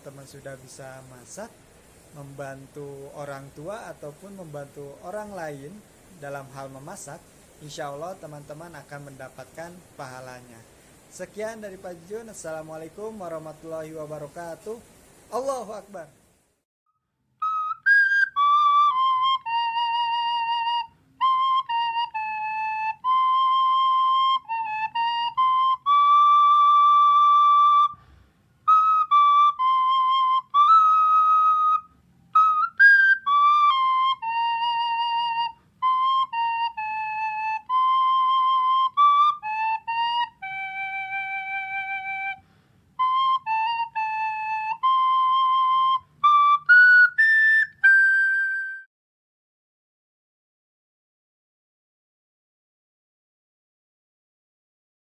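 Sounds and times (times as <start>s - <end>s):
solo flute melody: 0.0s - 15.8s, 17.3s - 48.9s.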